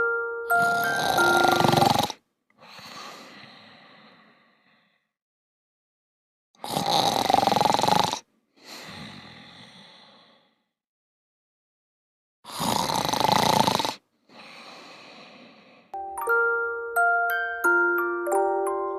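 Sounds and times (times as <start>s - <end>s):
mallet percussion music: 0.0s - 2.0s, 16.0s - 18.9s
person snoring loudly: 0.5s - 2.2s, 6.6s - 10.0s, 12.5s - 14.0s.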